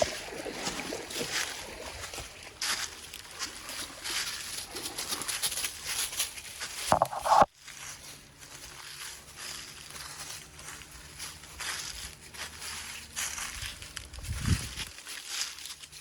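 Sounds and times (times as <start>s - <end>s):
rustling and crunching undergrowth: 0.0s - 16.0s.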